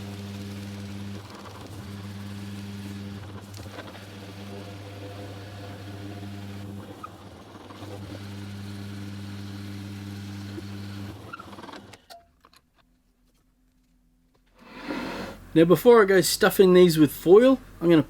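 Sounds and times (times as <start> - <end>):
power tool motor humming: 0.0 - 12.0.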